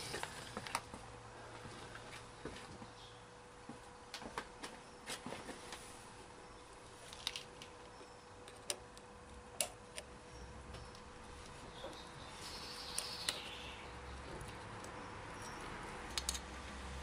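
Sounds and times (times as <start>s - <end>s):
faint steady hum: 0.0s - 17.0s
metal parts and tools clicking: 14.4s - 16.5s.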